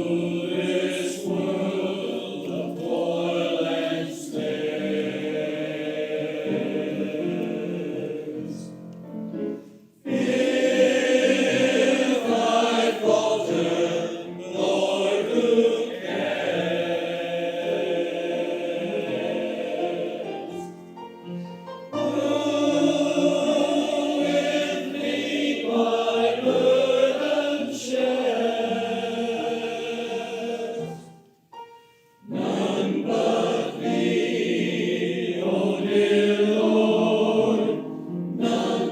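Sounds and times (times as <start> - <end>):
choir singing a hymn: 0.0 - 31.4, 32.2 - 38.9.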